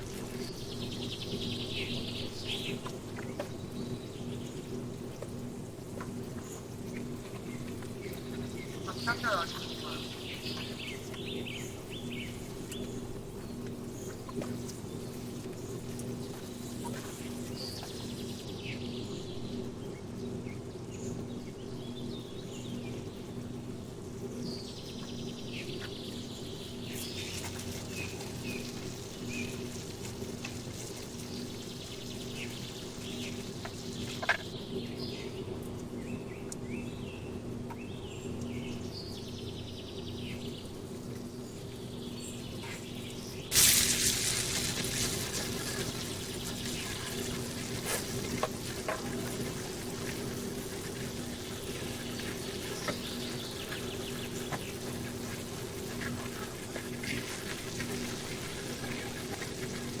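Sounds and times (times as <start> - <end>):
faint bird chirps: 8.1 - 13.0
food sizzling in a hot pan: 43.5 - 45.6.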